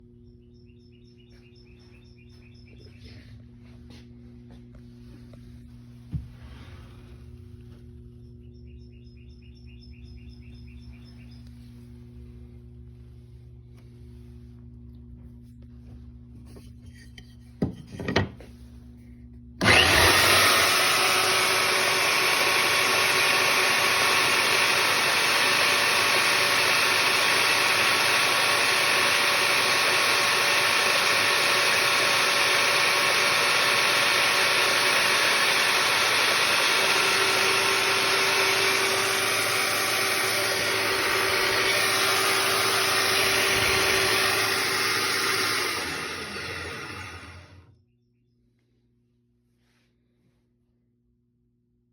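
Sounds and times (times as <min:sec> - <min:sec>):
band saw running: 0:19.6 - 0:47.7.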